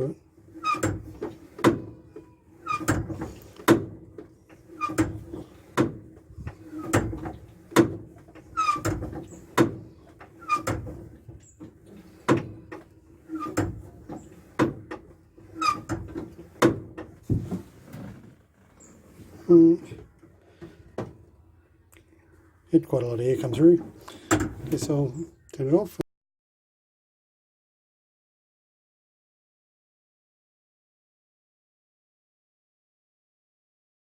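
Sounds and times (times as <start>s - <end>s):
hand pump clacking and squeaking: 0.0s - 21.1s, 23.3s - 25.5s.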